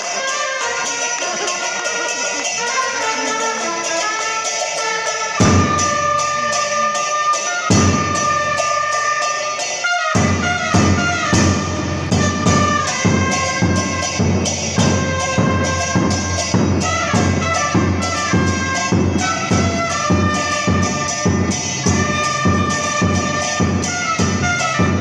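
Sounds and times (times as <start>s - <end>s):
trumpets playing cumbia melody: 0.0s - 25.0s
bass drum beat: 5.4s - 6.5s, 10.2s - 25.0s.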